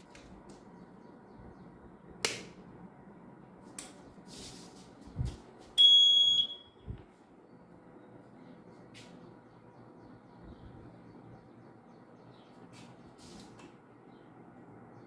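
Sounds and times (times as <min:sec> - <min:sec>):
loud high electronic beep: 0:05.8 - 0:06.8.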